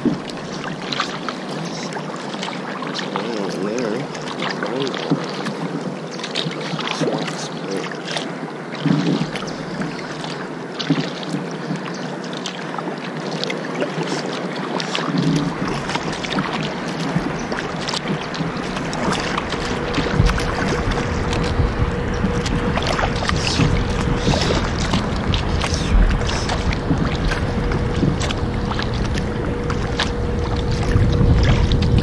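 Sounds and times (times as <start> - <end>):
small knocks and drips: 0.0 - 7.5, 8.8 - 32.0
paddle strokes splashing: 0.0 - 32.0
wind rumble on microphone: 15.1 - 32.0.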